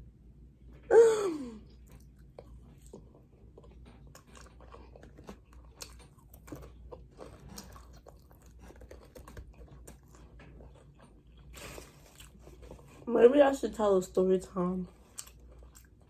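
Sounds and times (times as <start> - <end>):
person chewing food: 1.6 - 13.1, 14.8 - 16.0.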